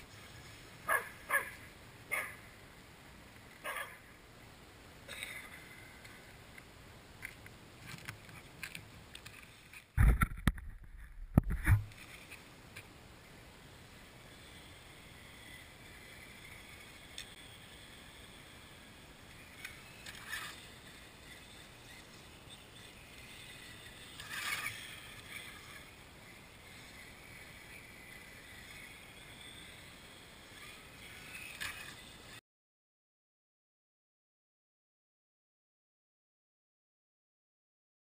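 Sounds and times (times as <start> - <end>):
steady hiss: 0.0 - 10.0, 12.0 - 32.4
electric motor whine: 13.9 - 32.4.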